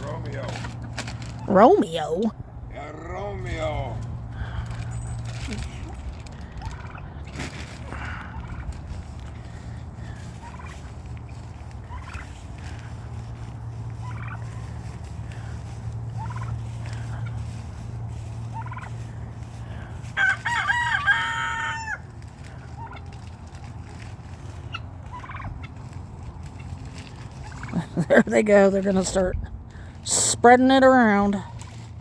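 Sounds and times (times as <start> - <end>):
turkey gobbling: 3.8 - 28.2
poultry calls: 6.3 - 28.0.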